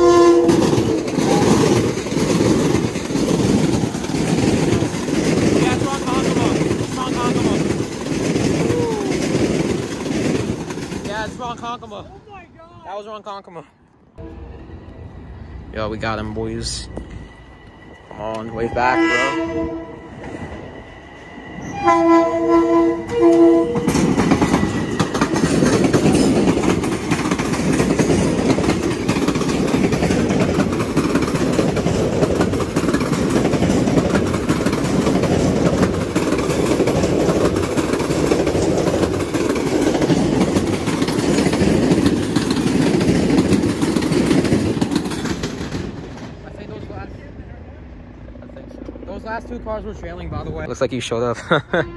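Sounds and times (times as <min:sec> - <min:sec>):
train horn blasts: 0:00.0 - 0:01.0, 0:14.2 - 0:15.5, 0:18.3 - 0:20.2, 0:21.6 - 0:24.0
train rail noise: 0:00.0 - 0:51.9.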